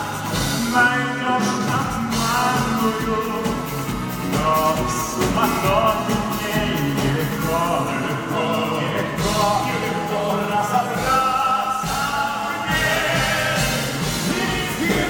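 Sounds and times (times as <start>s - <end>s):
person singing: 0.0s - 15.0s.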